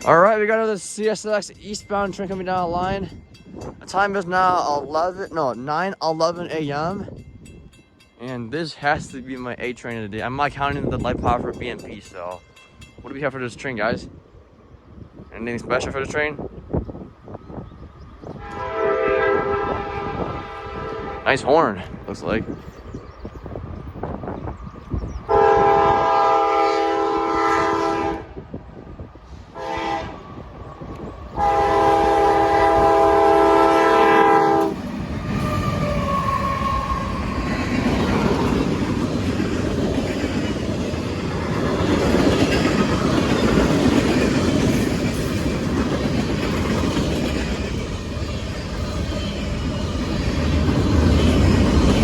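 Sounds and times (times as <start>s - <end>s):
train rumble: 0.0s - 52.0s
locomotive air horn blasts: 18.4s - 21.4s, 25.3s - 28.4s, 29.6s - 30.2s, 31.4s - 34.8s
wheels clattering over rails: 34.7s - 52.0s.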